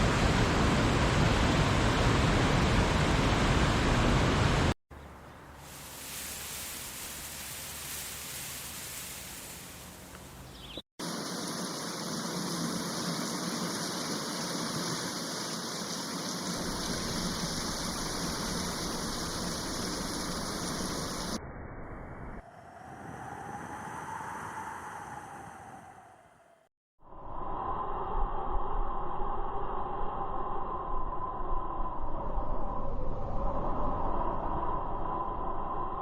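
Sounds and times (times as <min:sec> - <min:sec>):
rushing water: 0:05.6 - 0:10.4, 0:11.0 - 0:21.4.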